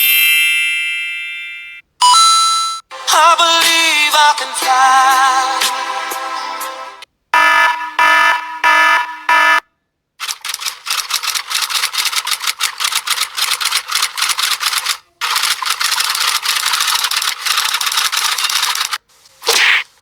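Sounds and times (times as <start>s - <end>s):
rapid irregular clicking: 10.2s - 19.1s.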